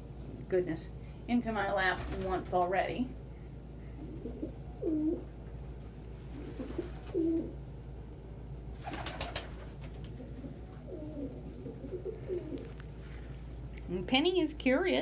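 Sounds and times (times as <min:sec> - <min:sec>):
pigeons cooing: 0:03.9 - 0:05.3, 0:06.4 - 0:07.6, 0:08.8 - 0:12.8.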